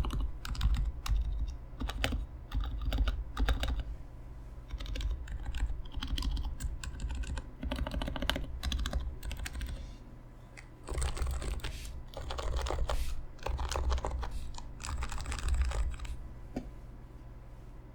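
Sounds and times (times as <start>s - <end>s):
keyboard typing: 0.0s - 3.8s, 4.7s - 9.8s, 10.8s - 16.2s.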